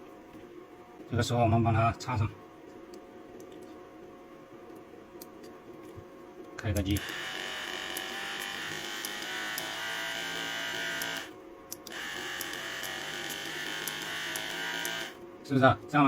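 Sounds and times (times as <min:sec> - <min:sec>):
massage gun motor buzzing: 0:07.0 - 0:15.2.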